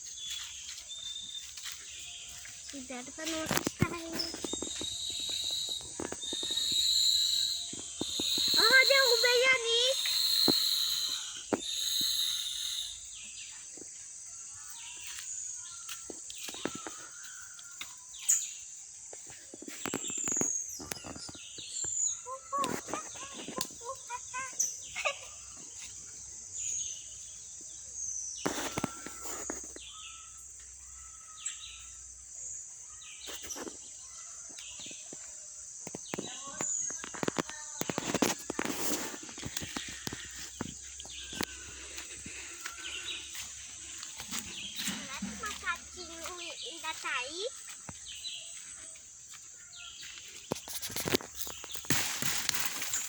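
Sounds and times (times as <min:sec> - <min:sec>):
high-pitched insect drone: 0:00.2 - 0:18.7, 0:34.4 - 0:53.0
sharp clicks and rustles: 0:03.3 - 0:06.6
bird chirps and whistles: 0:04.1 - 0:13.2.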